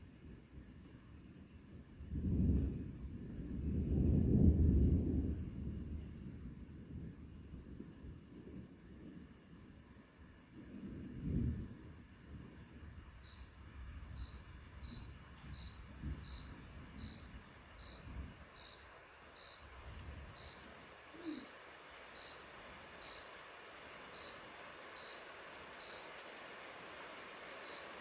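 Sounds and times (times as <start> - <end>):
cricket chirping: 13.1 - 26.6, 27.4 - 28.0.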